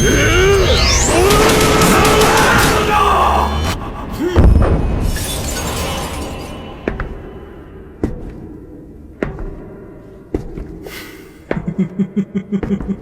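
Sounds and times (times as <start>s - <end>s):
soundtrack music: 0.0s - 8.6s
low rumble: 0.0s - 9.2s
heavy crash with shattering: 0.4s - 7.8s.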